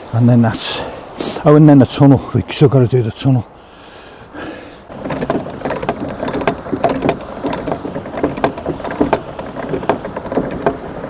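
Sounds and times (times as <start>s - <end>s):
ratchet metallic clicks and clanks: 4.9s - 11.0s.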